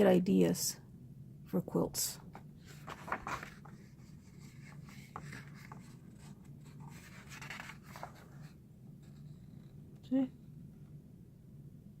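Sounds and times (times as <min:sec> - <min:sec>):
paper pages rustling: 0:02.3 - 0:09.2.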